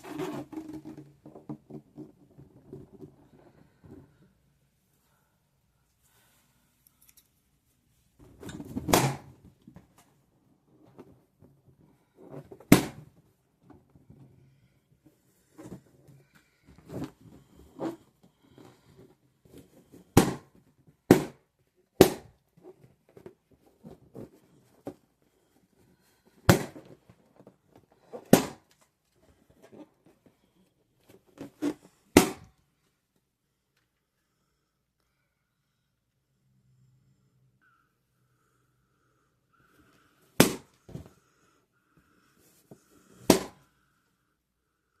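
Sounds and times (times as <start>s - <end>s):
balloons squeaking and rustling: 0.0s - 3.2s
balloons popping: 8.7s - 9.4s, 12.6s - 13.1s, 20.2s - 21.4s, 26.5s - 27.0s, 28.2s - 28.7s, 31.4s - 32.5s, 40.4s - 41.1s, 43.2s - 43.6s.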